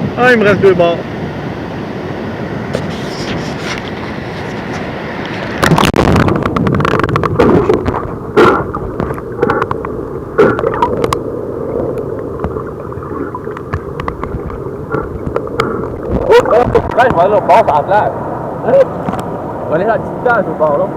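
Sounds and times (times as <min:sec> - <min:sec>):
river water splashing and gurgling: 0:01.0 - 0:20.9
loud water splash: 0:05.6 - 0:17.6
muffled underwater bubbling: 0:05.7 - 0:17.2.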